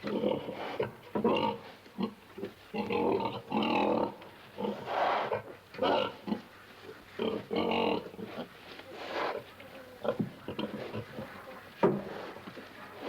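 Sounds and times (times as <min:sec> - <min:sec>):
pig grunting: 0:07.2 - 0:13.0.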